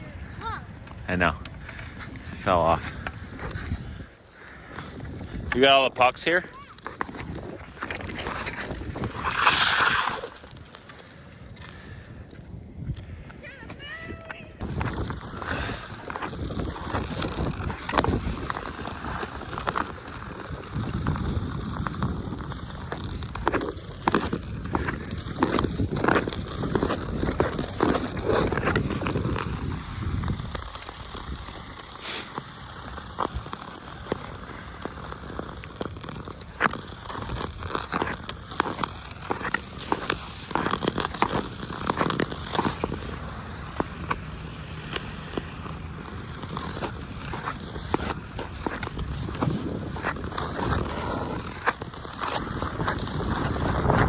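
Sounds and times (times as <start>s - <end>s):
wind on microphone: 0.0s - 5.6s, 6.4s - 10.6s, 11.9s - 31.8s, 44.8s - 54.0s
skate blades scraping ice: 0.0s - 54.0s
hockey sticks and pucks clicking: 0.8s - 54.0s.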